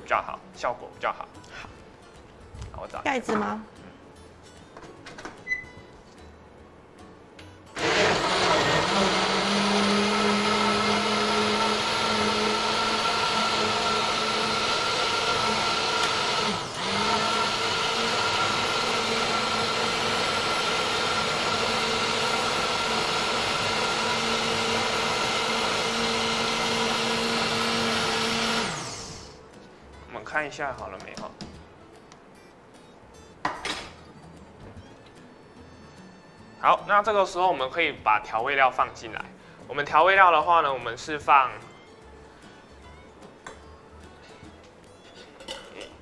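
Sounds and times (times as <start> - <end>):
blender motor whirring: 7.8 - 29.4.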